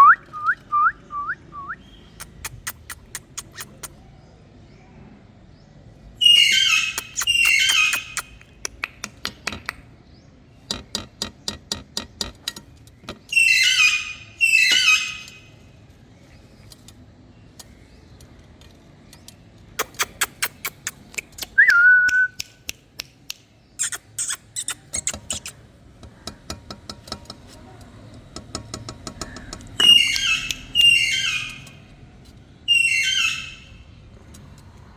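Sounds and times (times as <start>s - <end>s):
parakeet screeching: 6.2s - 8.2s, 13.3s - 15.5s, 29.8s - 31.8s, 32.7s - 33.7s
short whistle: 21.6s - 22.4s.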